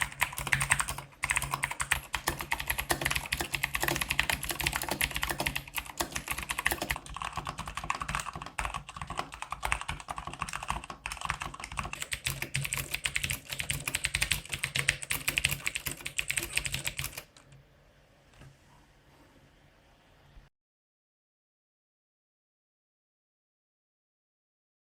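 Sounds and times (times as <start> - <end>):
mechanical keyboard typing: 0.0 - 17.5.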